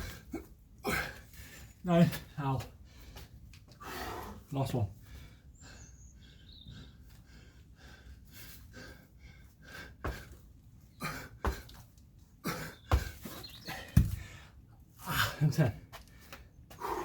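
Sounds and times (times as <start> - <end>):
man breathing hard: 0.0 - 1.8, 2.8 - 15.4, 16.0 - 17.0.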